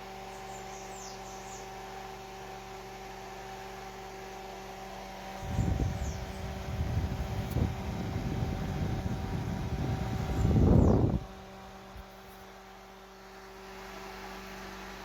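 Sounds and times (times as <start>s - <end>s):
microwave fan motor humming: 0.0s - 15.0s
wind buffeting microphone: 5.4s - 11.9s.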